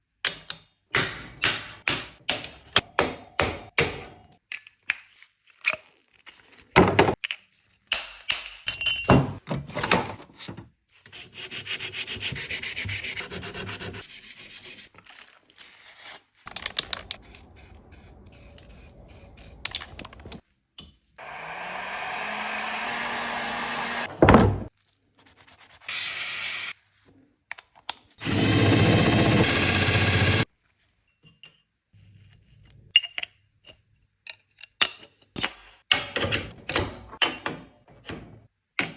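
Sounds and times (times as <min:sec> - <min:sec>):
hand-sanding strokes: 0:11.1 - 0:14.9
steady hissing noise: 0:16.6 - 0:20.7.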